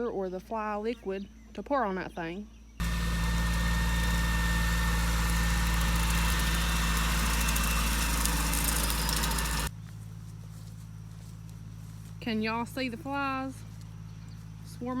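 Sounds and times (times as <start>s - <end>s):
tractor engine running: 2.8s - 9.7s
quiet engine hum: 2.8s - 15.0s.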